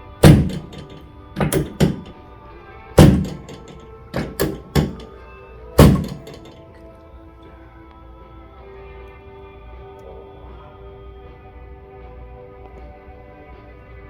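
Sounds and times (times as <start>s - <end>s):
sharp thunks of chiropractic thrusts: 0.0s - 2.2s, 3.0s - 5.1s, 5.8s - 6.6s.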